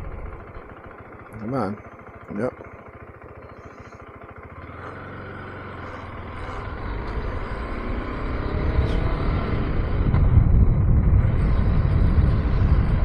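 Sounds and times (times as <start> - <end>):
low rushing rumble: 0.0 - 0.7, 6.3 - 13.0
motorcycle engine accelerating: 0.0 - 13.0.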